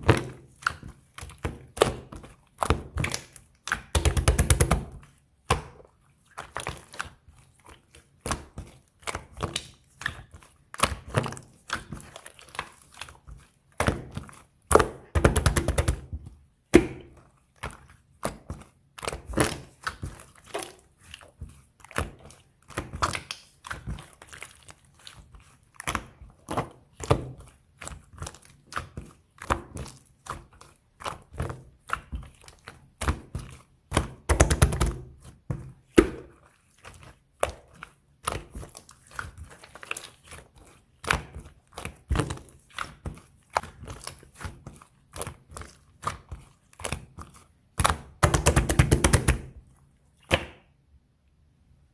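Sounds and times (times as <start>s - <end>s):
slime squeezed with wet pops: 0.0s - 50.8s.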